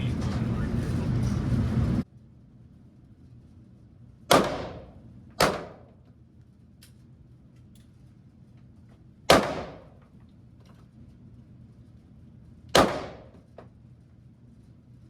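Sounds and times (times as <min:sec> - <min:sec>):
handgun shots: 0:04.3 - 0:05.9, 0:09.3 - 0:10.0, 0:12.7 - 0:13.4.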